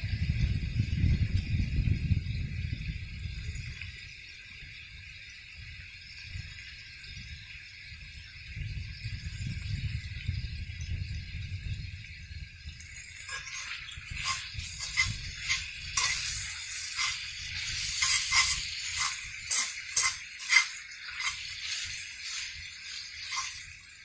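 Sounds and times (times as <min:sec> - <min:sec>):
food sizzling in a pan: 0:13.0 - 0:24.0
utensil clinking and scraping pan: 0:13.0 - 0:24.0.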